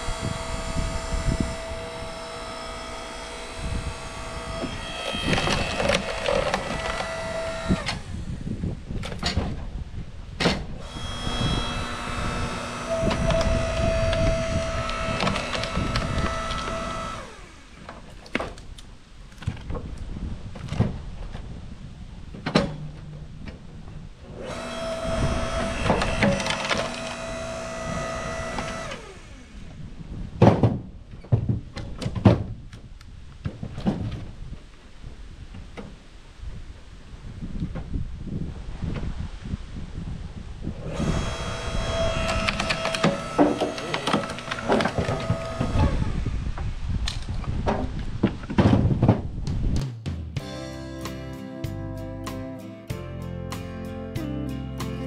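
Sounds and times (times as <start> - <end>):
small petrol engine running hard: 0.0 - 8.3, 10.8 - 17.8, 24.3 - 29.6, 40.8 - 46.2
wooden knocks and cracks: 30.4 - 32.8, 33.4 - 34.4, 47.1 - 49.6.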